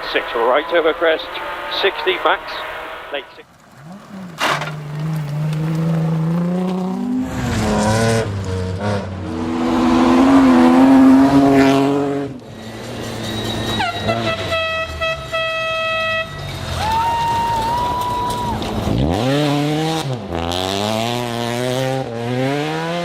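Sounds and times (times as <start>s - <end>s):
rally car engine revving: 0.0s - 15.0s, 18.3s - 23.0s
car horn: 9.6s - 12.3s, 13.5s - 16.8s.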